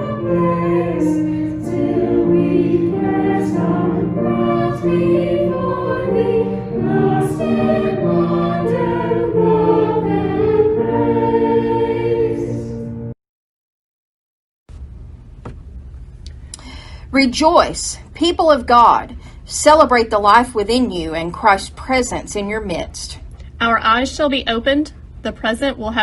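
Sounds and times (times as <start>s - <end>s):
choir singing sustained chords: 0.0s - 13.2s.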